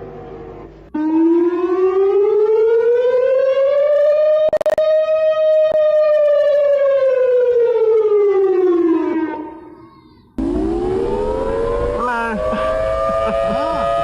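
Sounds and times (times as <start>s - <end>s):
civil defense siren: 0.9s - 9.8s, 10.4s - 14.0s
low rumble: 10.4s - 14.0s
siren winding up: 10.4s - 14.0s.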